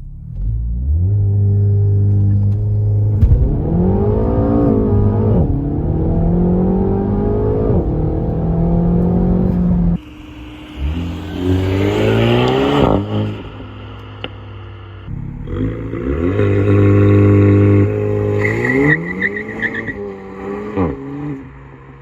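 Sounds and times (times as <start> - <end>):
car engine accelerating hard: 0.0 - 22.0.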